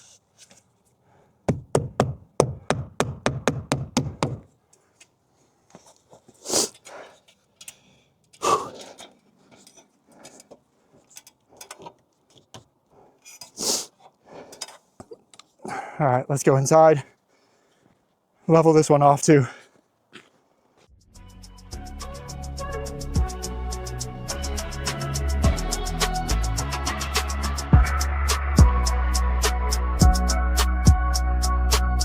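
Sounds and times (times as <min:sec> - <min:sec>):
hammer blows on wood: 0:01.5 - 0:04.5
scattered knocks and thumps: 0:01.5 - 0:04.5.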